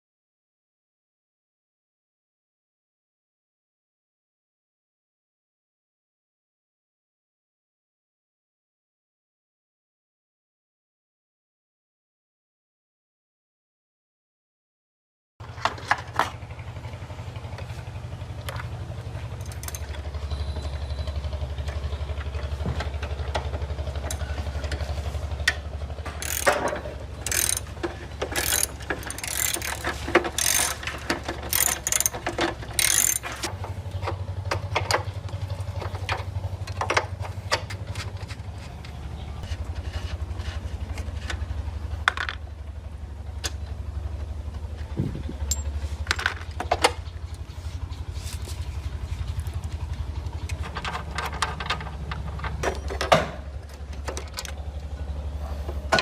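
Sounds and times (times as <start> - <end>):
ratchet clicking: 19.4 - 20.0, 26.1 - 33.5
metal clanks: 25.5 - 35.1, 45.4 - 47.1.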